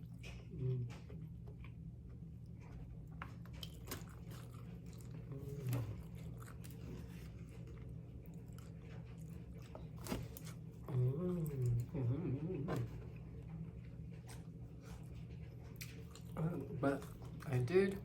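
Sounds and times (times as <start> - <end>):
short low hummed vocal sound: 0.0 - 1.8, 4.7 - 7.6, 9.8 - 18.0
person chewing food: 0.0 - 18.0
steady low hum: 0.0 - 18.0.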